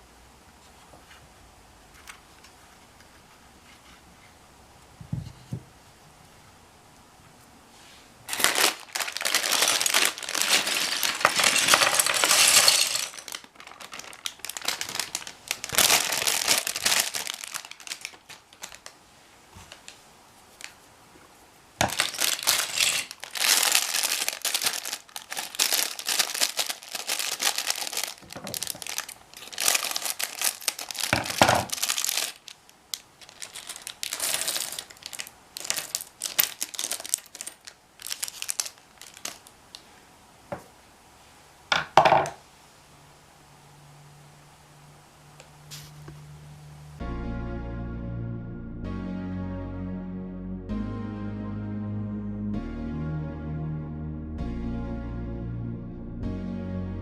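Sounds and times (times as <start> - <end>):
plastic bricks clattering: 8.3 - 18.8, 21.8 - 32.6, 33.2 - 39.4
plastic bags crinkling: 8.3 - 19.0, 21.8 - 39.6.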